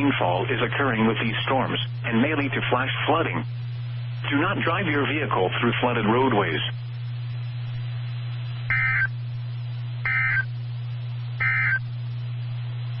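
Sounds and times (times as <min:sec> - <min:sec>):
low hum and hiss: 0:00.0 - 0:13.0
digital data tone bursts: 0:08.7 - 0:09.1, 0:10.1 - 0:10.5, 0:11.4 - 0:11.8.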